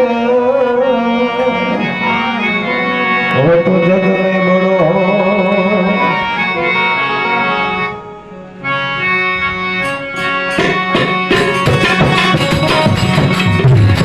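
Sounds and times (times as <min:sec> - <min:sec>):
harmonium playing held notes: 0:00.0 - 0:14.0
drum and percussion strokes: 0:09.9 - 0:14.0.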